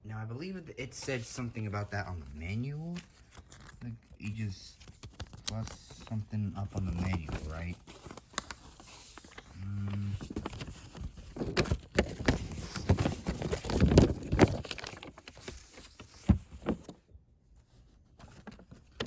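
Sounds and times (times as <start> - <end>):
cardboard box and paper handled: 0.9 - 17.0, 17.6 - 19.0.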